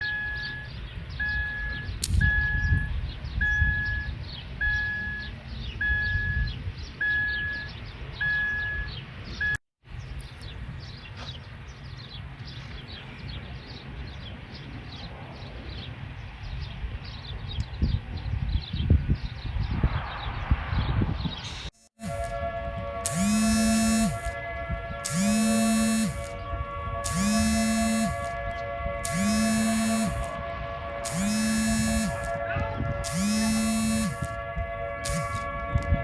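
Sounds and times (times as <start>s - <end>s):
wind buffeting microphone: 0.7s - 7.1s, 7.7s - 21.7s, 24.2s - 25.1s, 26.2s - 27.6s, 28.3s - 29.1s, 31.6s - 33.1s, 34.1s - 36.0s
birds chirping: 23.1s - 30.3s, 31.0s - 32.4s, 33.0s - 34.4s.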